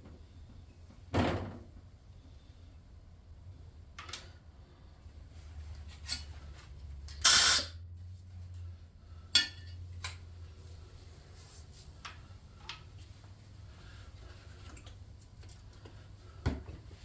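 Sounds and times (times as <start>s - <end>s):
loud burst of noise: 7.2s - 7.7s
sharp clicks and clinks: 7.2s - 7.7s.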